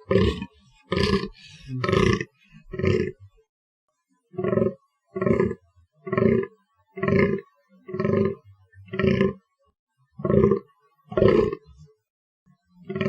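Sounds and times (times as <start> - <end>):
deer groaning: 0.0 - 3.2.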